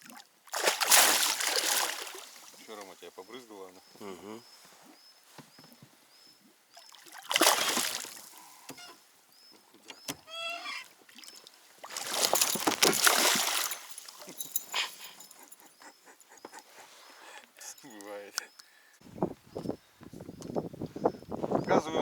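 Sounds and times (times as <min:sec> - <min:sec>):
fish thrashing and splashing: 0:00.5 - 0:02.5, 0:06.8 - 0:08.3, 0:11.0 - 0:14.6.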